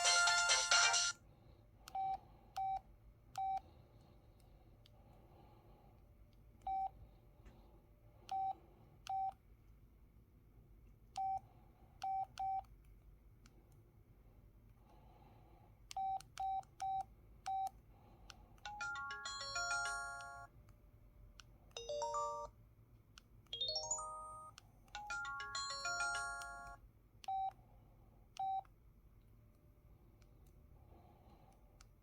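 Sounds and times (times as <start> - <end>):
key-press beeps: 12.0 - 12.7, 15.9 - 17.8, 23.5 - 27.6, 28.4 - 28.7.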